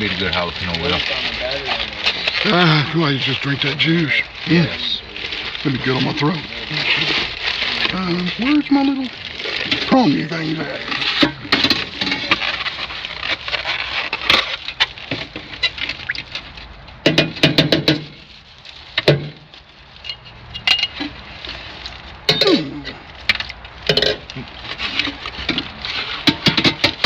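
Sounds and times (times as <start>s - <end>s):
metal utensil clinking on jar: 20.0s - 21.0s.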